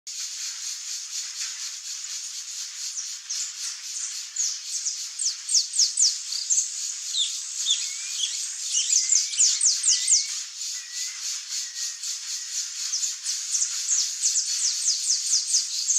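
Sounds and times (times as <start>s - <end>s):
high pulsing hiss: 0.1s - 15.9s
finch whistling song: 4.4s - 13.1s.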